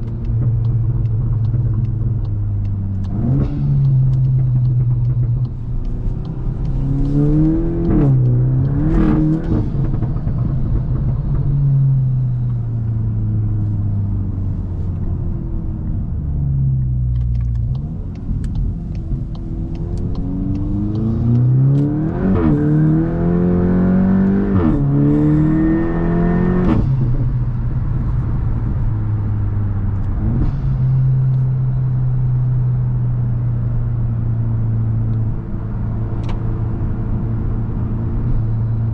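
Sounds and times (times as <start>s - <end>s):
exhaust cracks on shifts: 0.0s - 25.6s
car engine accelerating hard: 0.0s - 38.9s.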